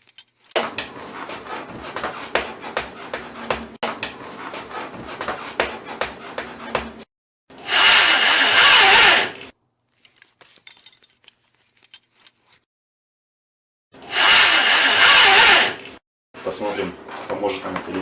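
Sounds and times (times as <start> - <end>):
drill driving screw into wood: 7.6 - 9.4, 14.0 - 16.0.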